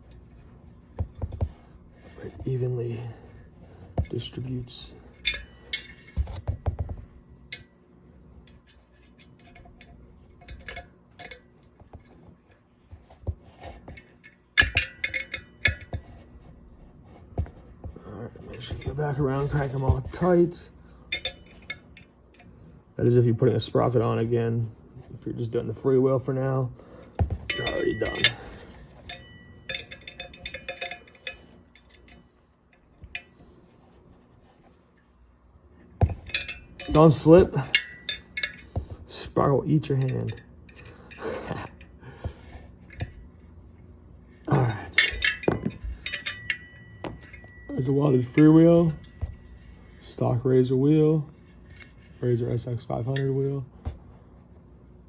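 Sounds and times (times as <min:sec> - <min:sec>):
wrench and bolts clinking: 0:04.0 - 0:06.7, 0:08.4 - 0:12.6, 0:13.8 - 0:16.2, 0:18.4 - 0:22.5, 0:27.2 - 0:33.5, 0:36.0 - 0:43.3, 0:44.4 - 0:50.2.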